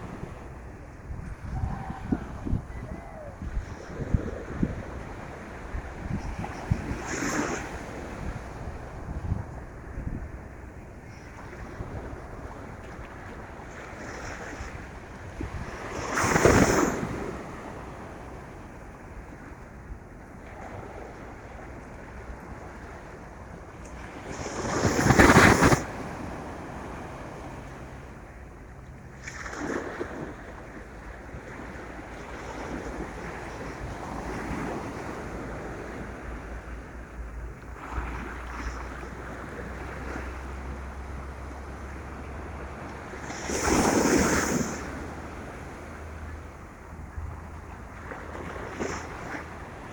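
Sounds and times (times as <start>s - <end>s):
surf breaking on beach: 0.0s - 18.6s, 23.8s - 28.3s, 29.2s - 49.9s
steady wind: 0.0s - 49.9s
wind buffeting microphone: 0.0s - 49.9s.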